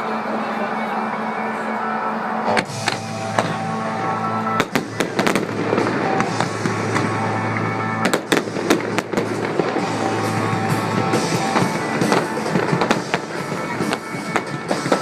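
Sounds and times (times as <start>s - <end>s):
music with held notes: 0.0s - 15.0s
fireworks bursting: 2.4s - 15.0s.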